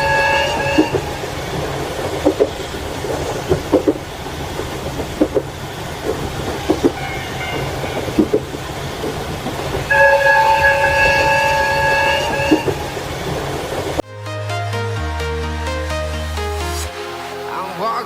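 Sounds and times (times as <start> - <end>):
train wheels clicking over rail joints: 0.0 - 14.0
low rumble of moving train: 0.0 - 14.1.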